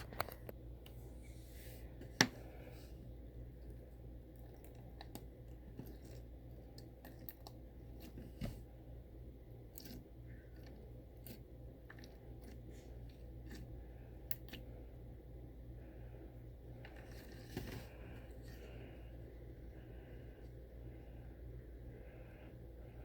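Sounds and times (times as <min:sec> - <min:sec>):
slime squishing: 0:01.4 - 0:15.0, 0:16.6 - 0:19.1.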